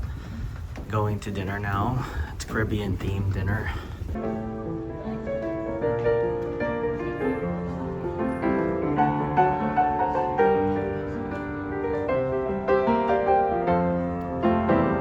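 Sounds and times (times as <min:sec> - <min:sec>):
gentle piano music: 0:04.1 - 0:15.0.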